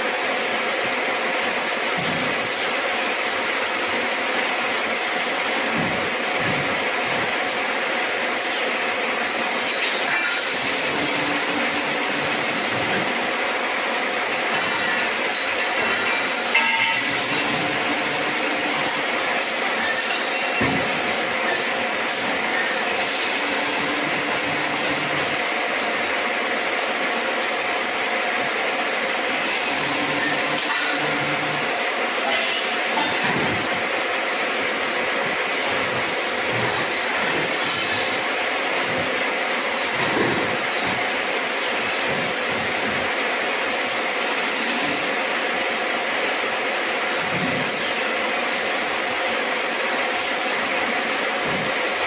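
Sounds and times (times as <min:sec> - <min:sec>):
welding machine running: 0:00.0 - 0:52.0.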